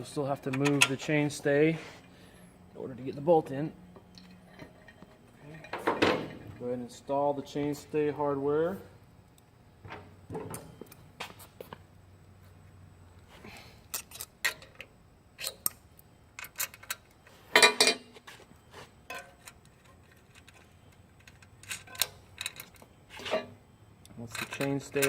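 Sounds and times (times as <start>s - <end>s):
small metal parts clinking: 13.9s - 15.8s, 16.4s - 18.1s, 19.1s - 23.4s, 24.2s - 25.0s.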